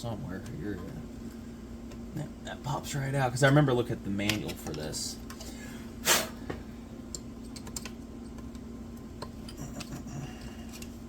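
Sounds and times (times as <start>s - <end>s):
steady low hum: 0.0s - 11.0s
tools and small parts clicking: 7.1s - 8.6s.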